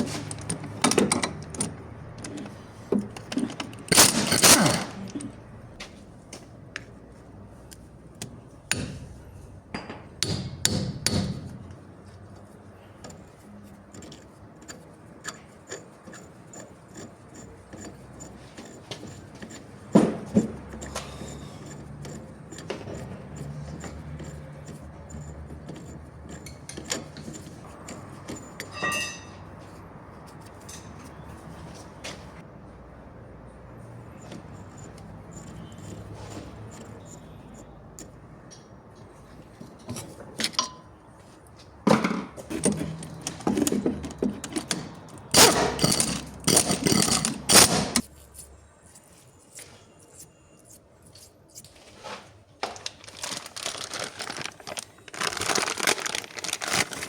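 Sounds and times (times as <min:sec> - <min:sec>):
tool clicks and clinks: 0:00.0 - 0:05.4, 0:13.9 - 0:29.4, 0:39.7 - 0:40.9, 0:42.5 - 0:48.1
ringing metal clink: 0:28.4 - 0:29.4.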